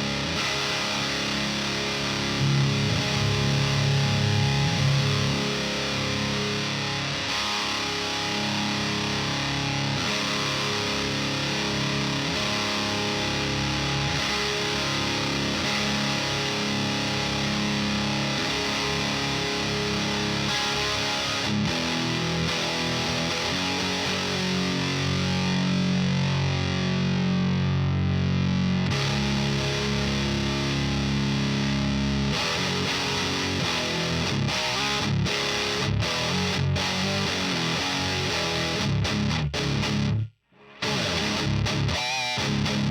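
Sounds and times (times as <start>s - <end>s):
distorted electric guitar chords: 0.0s - 42.9s.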